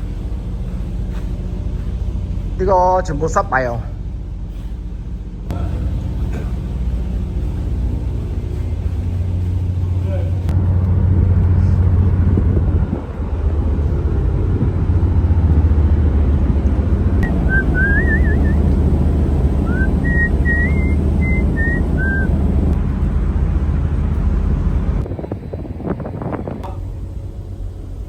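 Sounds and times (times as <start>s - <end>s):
ship engines droning: 0.0s - 28.0s
person whistling a tune: 17.2s - 18.6s, 19.6s - 22.3s.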